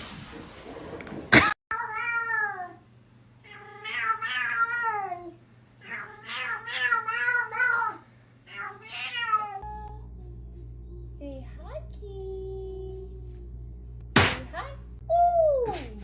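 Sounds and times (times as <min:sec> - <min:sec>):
cat meowing: 0:03.5 - 0:10.0.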